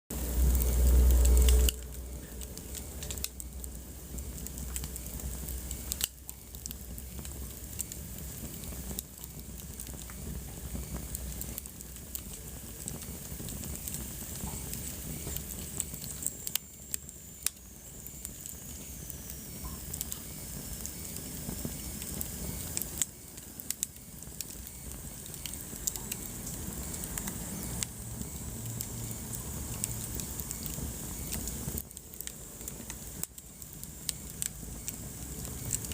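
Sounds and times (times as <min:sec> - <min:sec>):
fire hiss and low rumble: 0:00.1 - 0:35.9
wood fire crackling and popping: 0:00.1 - 0:35.9
faint high whistle: 0:14.5 - 0:29.2.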